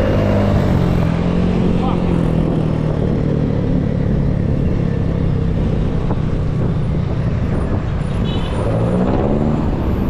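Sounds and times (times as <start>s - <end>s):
road and traffic noise: 0.0s - 10.0s
wind on microphone: 5.0s - 8.2s.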